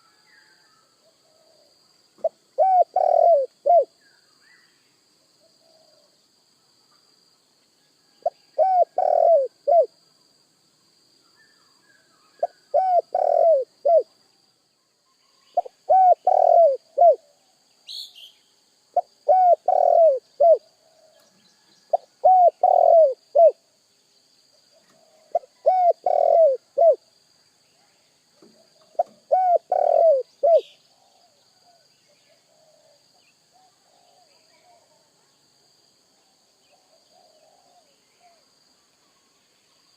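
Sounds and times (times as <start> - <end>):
dove cooing: 1.2 - 3.9, 8.2 - 9.9, 12.4 - 14.1, 15.6 - 17.3, 19.0 - 21.2, 21.9 - 23.6, 24.8 - 27.0, 28.6 - 31.8, 36.7 - 38.4.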